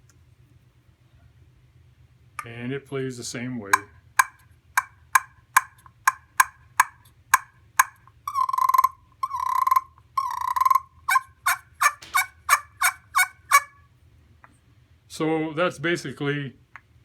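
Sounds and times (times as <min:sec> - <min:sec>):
turkey call clucks: 0:03.7 - 0:13.9
turkey call rolling purrs: 0:03.8 - 0:13.9.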